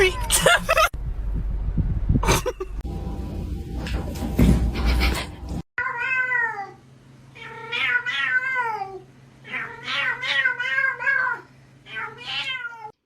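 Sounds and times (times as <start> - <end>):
cat meowing: 5.8 - 6.8, 7.4 - 13.0.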